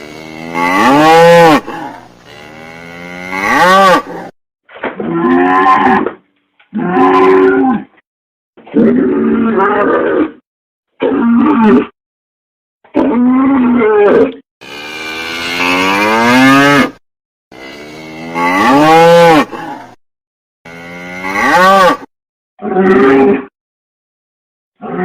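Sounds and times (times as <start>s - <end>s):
cattle mooing: 0.0s - 4.3s, 14.6s - 17.0s, 17.6s - 20.0s, 20.7s - 23.5s.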